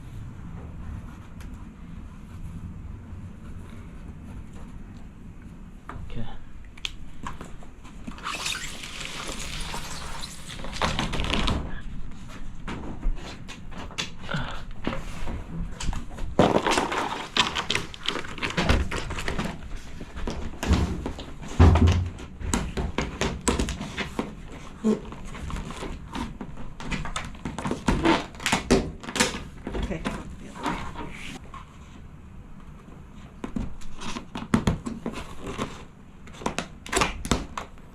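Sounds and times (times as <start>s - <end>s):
plastic sheets rattling: 16.3s - 19.8s.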